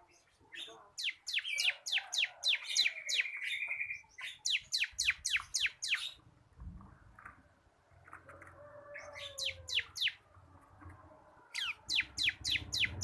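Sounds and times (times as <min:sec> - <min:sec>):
bird singing falling whistled notes: 0:11.5 - 0:13.0
buzzy bird trill: 0:11.5 - 0:13.0.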